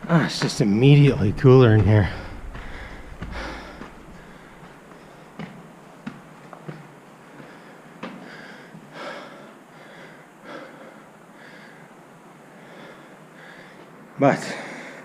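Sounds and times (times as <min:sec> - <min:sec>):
person breathing: 0:01.5 - 0:05.4, 0:07.4 - 0:13.9.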